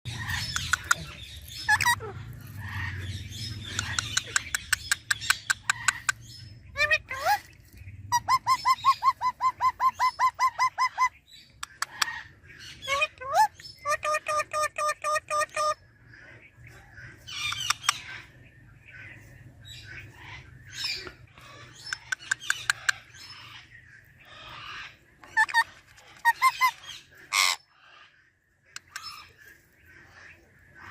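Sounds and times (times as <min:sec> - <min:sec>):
parrot pitched calls: 0:00.1 - 0:07.5, 0:08.1 - 0:15.8, 0:24.5 - 0:27.6
parrot chirping: 0:00.1 - 0:13.1, 0:21.7 - 0:23.6, 0:25.2 - 0:27.6.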